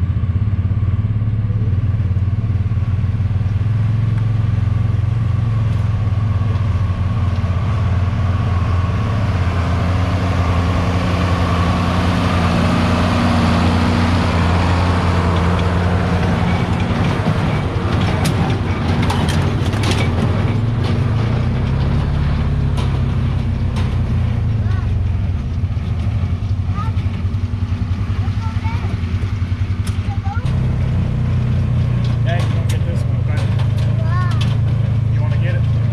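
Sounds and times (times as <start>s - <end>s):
tractor diesel engine running: 0.0s - 35.9s
sharp clacks: 14.3s - 35.9s.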